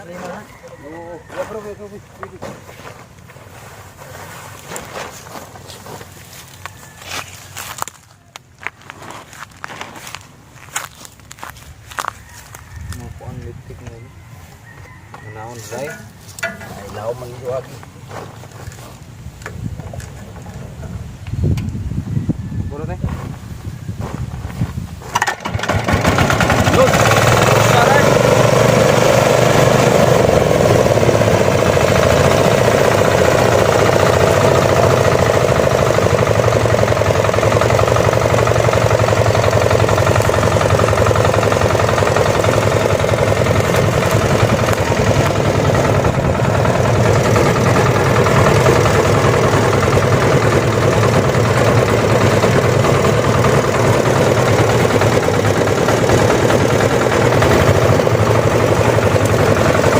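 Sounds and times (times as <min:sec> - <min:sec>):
threshing machine engine droning: 0:24.4 - 0:59.9.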